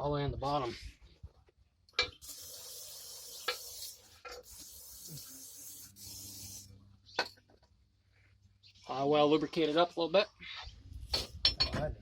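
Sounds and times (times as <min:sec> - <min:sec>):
aerosol spray can hissing: 0:02.2 - 0:06.7.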